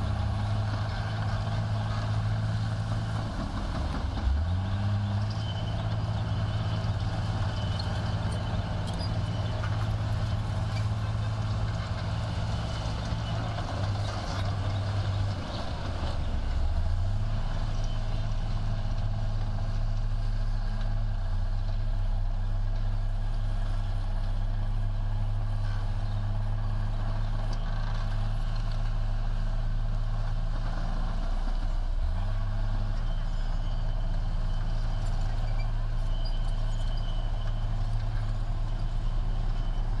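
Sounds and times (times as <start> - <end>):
heavy diesel engine under load: 0.0 - 40.0.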